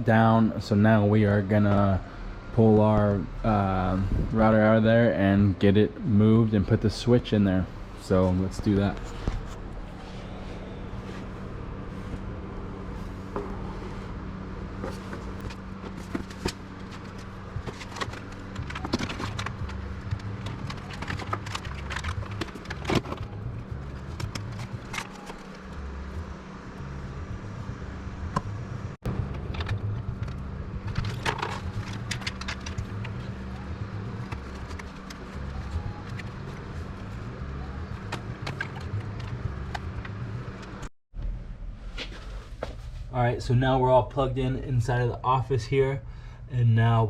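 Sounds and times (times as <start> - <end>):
low hum: 0.0 - 47.0
cables clicking and rattling: 14.8 - 25.8, 29.1 - 40.9.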